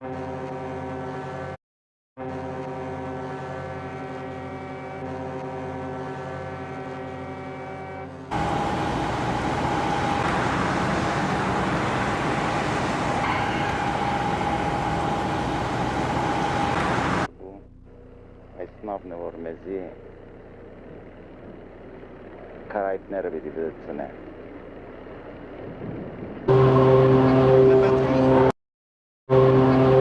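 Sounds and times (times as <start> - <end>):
ship's horn blast: 0.0 - 1.6, 2.2 - 17.3, 26.5 - 28.5, 29.3 - 30.0
high ship's whistle: 2.3 - 17.3.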